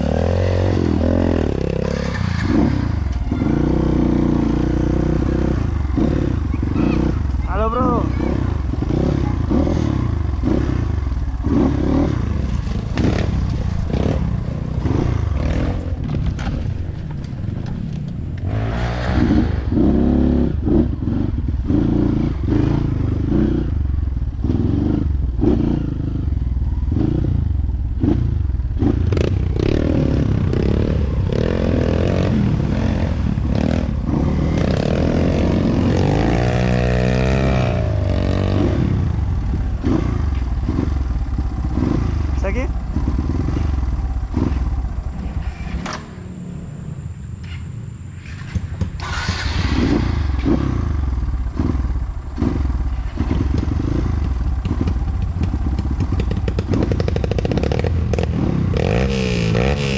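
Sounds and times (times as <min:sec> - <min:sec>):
motorcycle engine revving: 0:00.0 - 0:59.9
clatter and knocks over rough ground: 0:12.3 - 0:18.5, 0:48.2 - 0:49.1, 0:52.9 - 0:58.3.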